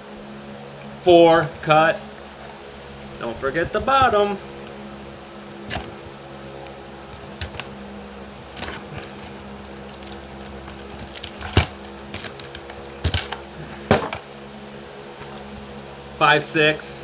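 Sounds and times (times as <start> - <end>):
fan hum: 0.0 - 17.0
duct tape ripping: 5.6 - 6.1, 7.0 - 7.7, 8.4 - 14.2, 15.2 - 15.6.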